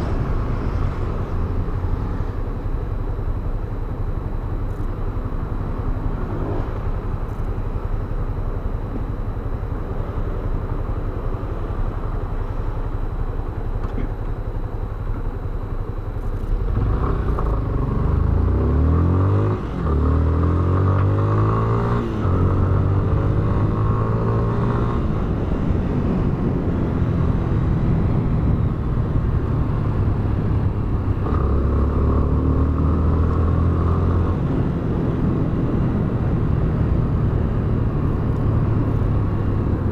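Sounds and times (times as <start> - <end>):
motorcycle engine accelerating: 16.4 - 39.9.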